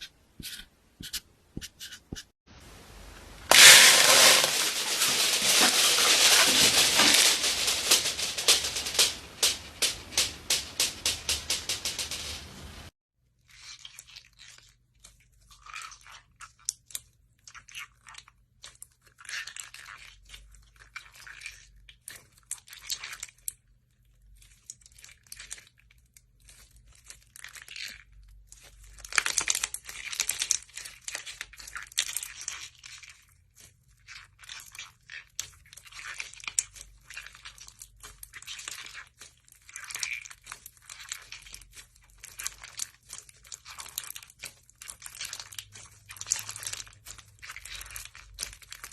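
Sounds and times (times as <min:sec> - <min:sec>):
slime squished by hand: 0:34.8 - 0:48.9.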